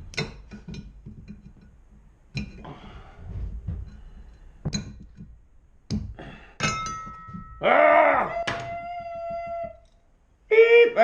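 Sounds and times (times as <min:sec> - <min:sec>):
handling and rubbing: 0:00.0 - 0:05.9.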